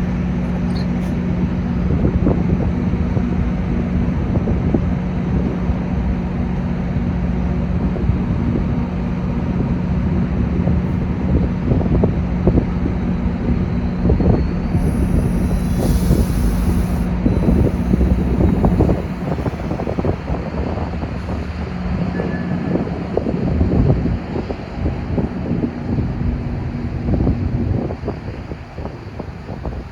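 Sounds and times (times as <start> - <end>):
train engine drone: 5.5 - 29.9
wind buffeting microphone: 10.6 - 29.9
train knocking and clattering: 11.0 - 29.9
high hiss: 12.8 - 21.4.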